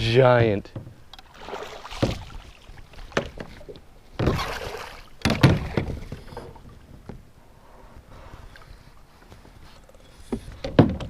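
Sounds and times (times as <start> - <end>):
paddle knocking against hull: 0.7 - 7.2
paddle splashing water: 1.2 - 7.0.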